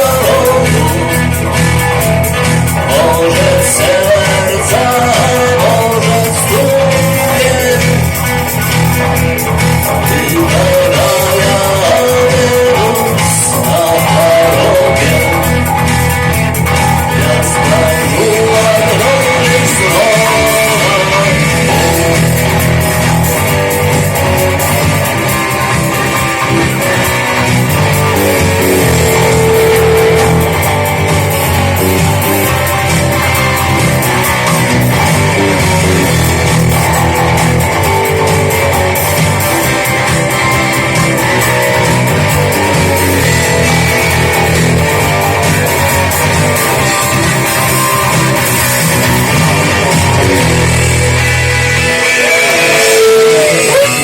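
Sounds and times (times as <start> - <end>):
person singing: 0.0 - 1.9, 2.7 - 8.2, 9.9 - 15.6, 17.0 - 22.6, 26.4 - 32.5
bass and drums: 0.0 - 54.0
guitar: 0.0 - 54.0.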